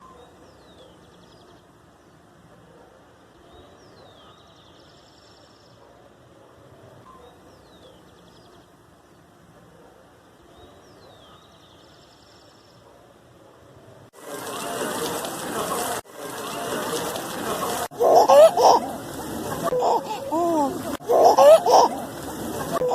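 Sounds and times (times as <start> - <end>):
outdoor background hiss: 0.0 - 22.9.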